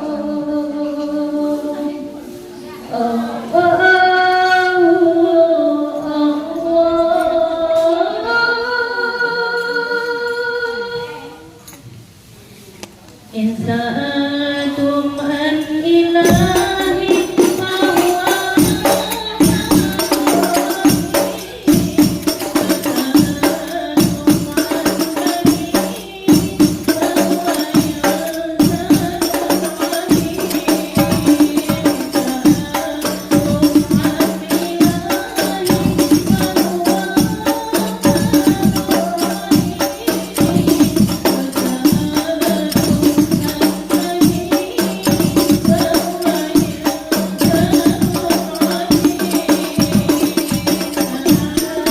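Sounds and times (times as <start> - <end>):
frame drums in fast rhythm: 16.2 - 51.9.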